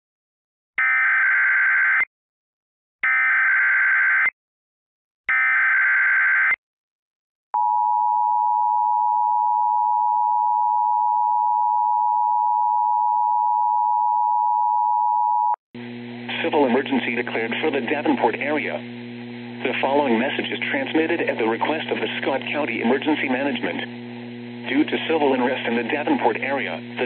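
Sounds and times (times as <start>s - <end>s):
steady attention tone: 15.1s - 27.0s.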